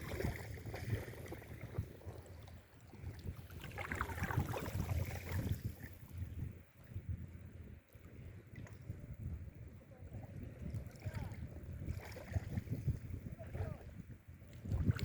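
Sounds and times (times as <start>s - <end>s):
sea water washing at shore: 0.0s - 6.3s, 10.1s - 15.0s
wind buffeting microphone: 0.0s - 15.0s.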